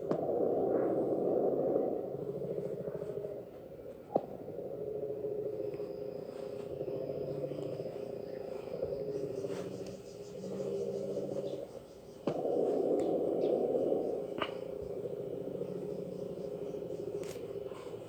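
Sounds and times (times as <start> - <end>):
buzzing electronic alarm tone: 5.3 - 11.6.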